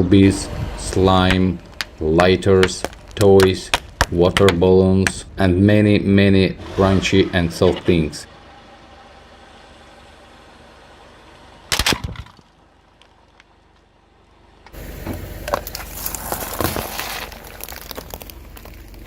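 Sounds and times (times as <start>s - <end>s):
car engine running: 0.0s - 5.4s, 6.4s - 19.0s
tyre crunching objects: 0.1s - 5.5s, 14.7s - 19.0s
loud crack: 0.8s - 5.3s, 11.7s - 12.6s.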